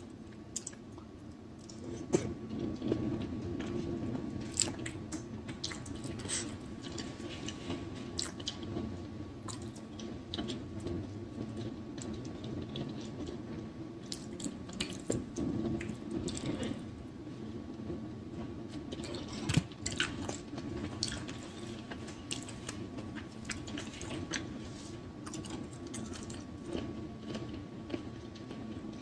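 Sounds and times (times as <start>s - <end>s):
chewing wet food: 0.3s - 1.0s, 4.4s - 7.6s, 8.2s - 8.8s, 9.4s - 13.4s, 14.0s - 16.8s, 18.9s - 28.5s.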